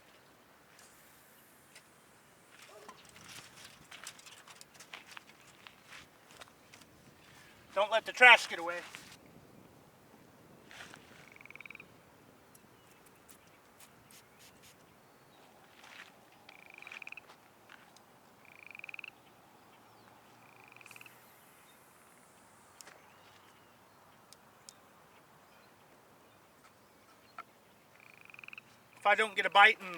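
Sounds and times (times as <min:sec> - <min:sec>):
frog trilling: 0:11.3 - 0:11.9, 0:16.5 - 0:17.3, 0:18.4 - 0:19.2, 0:20.4 - 0:21.7, 0:27.4 - 0:28.7.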